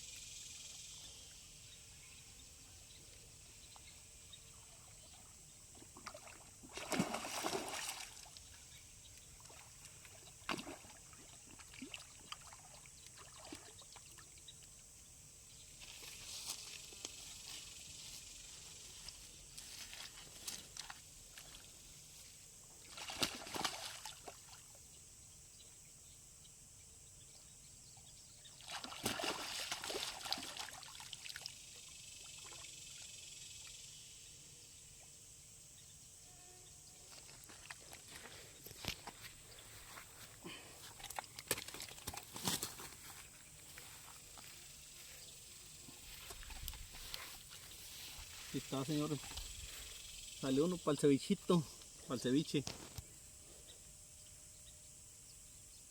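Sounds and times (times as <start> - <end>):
fish splashing in water: 6.0 - 8.6, 9.4 - 14.2, 22.8 - 24.6, 28.6 - 31.6.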